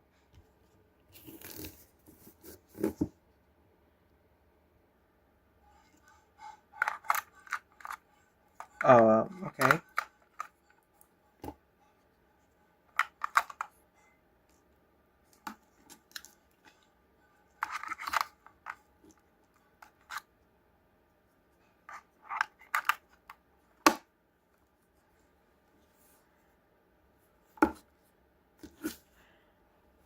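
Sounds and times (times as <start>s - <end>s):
plastic parts clicking and snapping: 6.8s - 8.0s, 8.6s - 10.6s.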